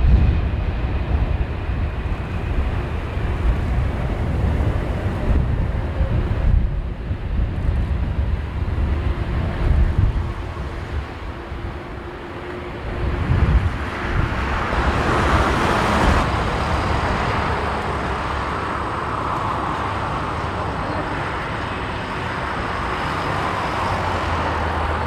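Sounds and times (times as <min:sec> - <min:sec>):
jet engines roaring: 0:00.0 - 0:25.0
wind buffeting microphone: 0:00.0 - 0:25.0.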